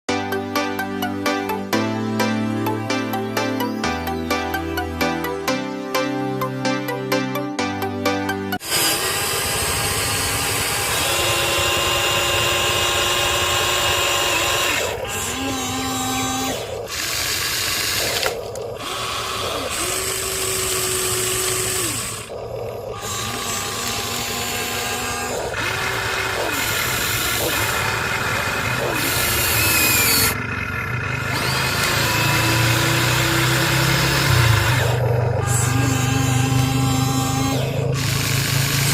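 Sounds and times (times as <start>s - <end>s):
small electric motors whining: 8.6s - 38.9s.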